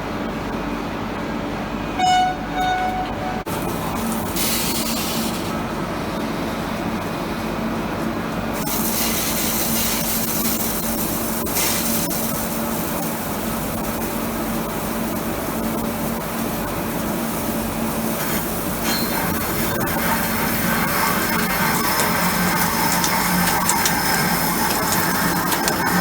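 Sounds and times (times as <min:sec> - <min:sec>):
lathe humming and hissing: 0:19.1 - 0:26.0.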